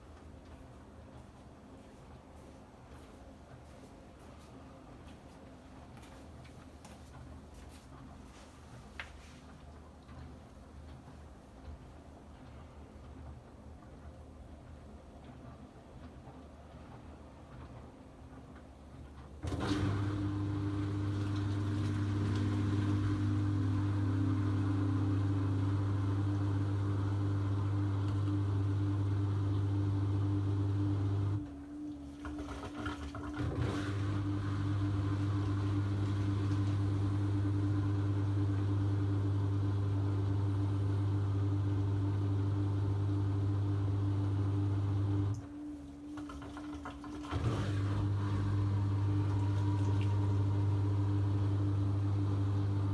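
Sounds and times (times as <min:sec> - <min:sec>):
machine humming loudly: 0:47.2 - 0:52.9.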